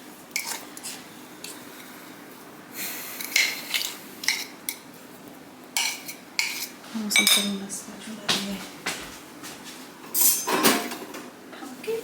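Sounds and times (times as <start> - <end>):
utensil scraping a bowl: 5.8 - 7.5.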